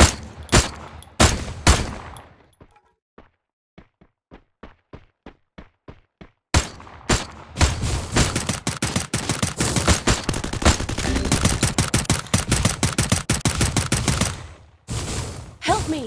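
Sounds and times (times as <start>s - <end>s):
sharp cracks and bangs: 0.0s - 2.2s, 6.6s - 15.6s.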